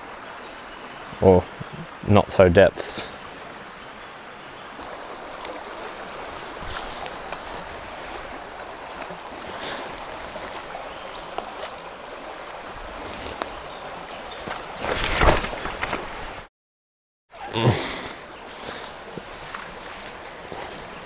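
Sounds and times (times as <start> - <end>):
shallow stream running: 0.0 - 16.5, 17.4 - 21.0
faint splashes and ticks: 4.8 - 13.5.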